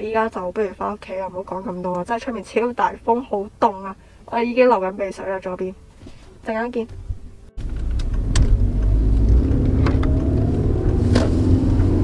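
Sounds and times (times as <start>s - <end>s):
car rumbling on the move: 7.0s - 12.0s.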